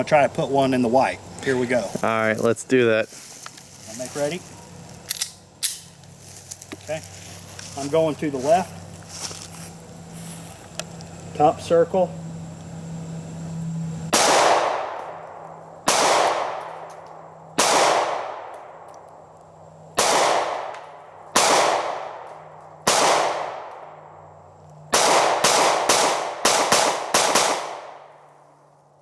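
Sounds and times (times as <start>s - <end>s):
pistol shots echoing: 14.1s - 15.2s, 15.8s - 16.9s, 17.6s - 18.6s, 20.0s - 23.9s, 24.9s - 28.2s.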